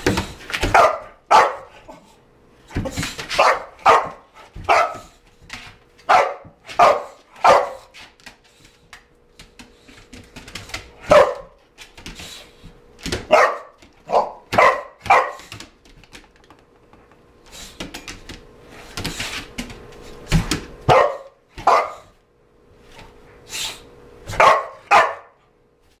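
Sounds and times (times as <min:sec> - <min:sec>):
dog barking: 0:00.7 - 0:01.8, 0:03.3 - 0:05.1, 0:06.1 - 0:07.9, 0:11.0 - 0:11.6, 0:13.3 - 0:15.5, 0:20.9 - 0:22.1, 0:24.3 - 0:25.4.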